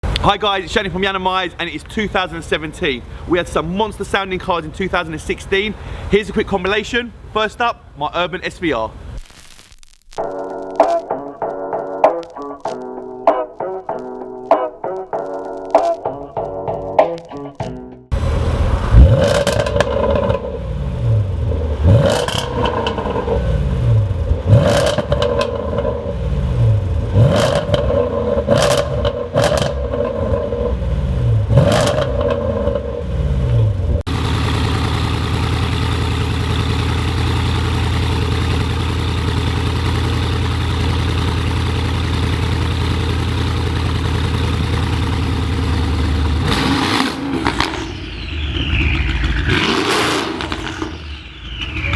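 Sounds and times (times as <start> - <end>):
exhaust pops and crackles: 13.9 - 48.0
car engine revving: 18.1 - 51.9.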